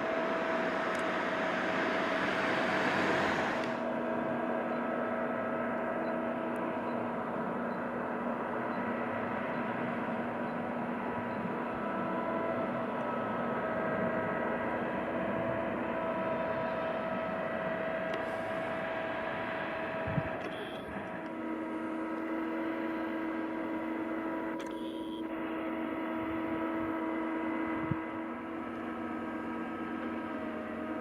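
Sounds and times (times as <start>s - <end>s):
diesel engine drone: 0.0s - 31.0s
machinery whining: 0.0s - 31.0s.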